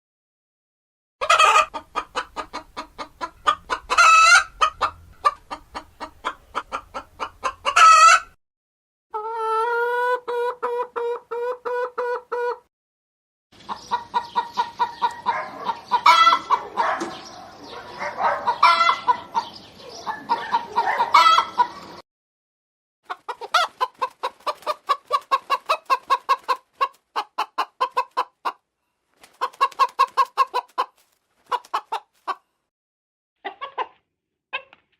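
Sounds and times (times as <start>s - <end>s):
hen drawn-out calls: 1.2s - 8.3s, 14.0s - 16.9s, 20.1s - 21.9s
hen clucking: 1.2s - 8.4s, 9.1s - 12.7s, 13.6s - 22.0s, 23.1s - 28.6s, 29.2s - 32.4s, 33.4s - 34.8s.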